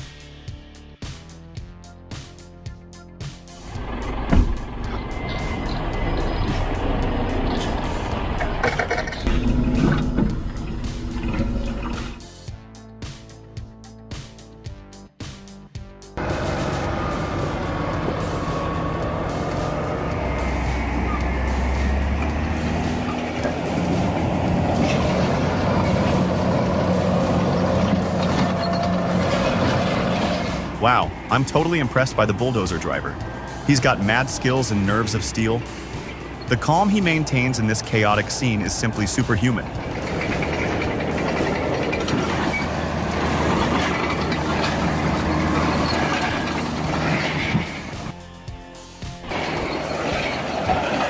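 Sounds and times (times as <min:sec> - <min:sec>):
bulldozer diesel engine running: 0:03.4 - 0:12.5, 0:16.2 - 0:51.0.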